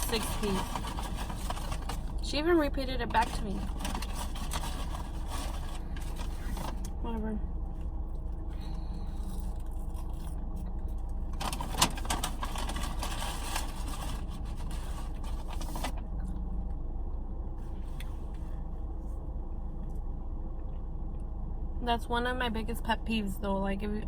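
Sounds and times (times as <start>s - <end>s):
wrapper rustling and scraping: 0.0s - 2.3s, 3.1s - 7.0s, 11.3s - 16.0s
car engine idling: 0.0s - 24.0s.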